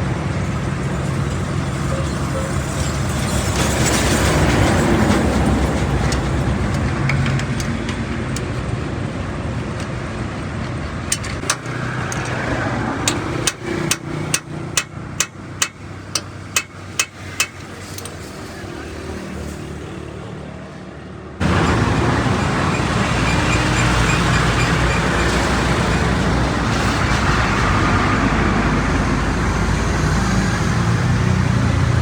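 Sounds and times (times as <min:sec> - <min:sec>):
vehicle passing: 0:21.4 - 0:32.0.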